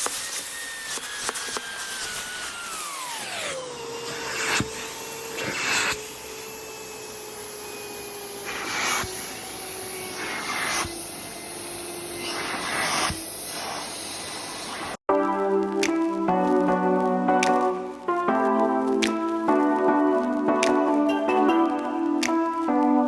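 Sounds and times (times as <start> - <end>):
vacuum cleaner motor whine: 0.0 - 15.0.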